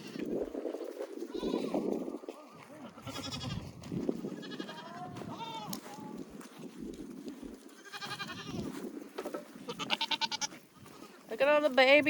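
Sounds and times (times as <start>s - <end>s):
goats bleating: 1.3s - 3.6s, 4.3s - 6.1s, 7.7s - 8.7s, 9.6s - 11.2s.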